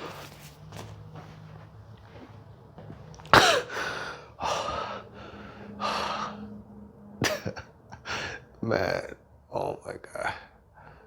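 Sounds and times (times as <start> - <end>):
loud breaths: 3.4 - 6.8, 8.0 - 8.6, 10.2 - 11.0.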